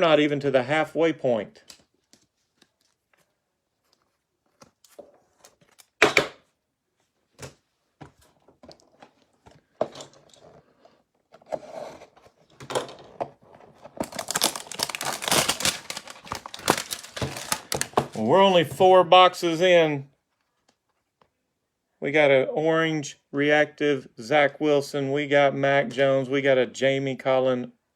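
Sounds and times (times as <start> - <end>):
wrapper packaging crinkling: 13.9 - 18.3.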